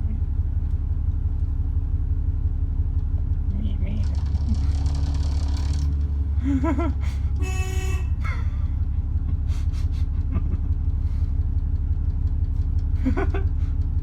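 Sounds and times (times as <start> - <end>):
bus engine idling: 0.0 - 14.0
bus horn toot: 7.1 - 9.0.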